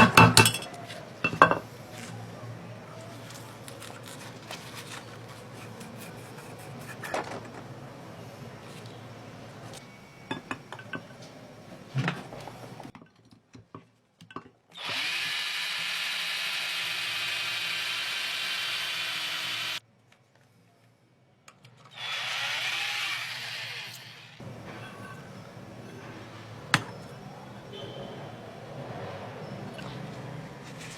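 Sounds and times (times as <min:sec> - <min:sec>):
small electric motor whirring: 0:14.8 - 0:19.8, 0:21.9 - 0:24.4.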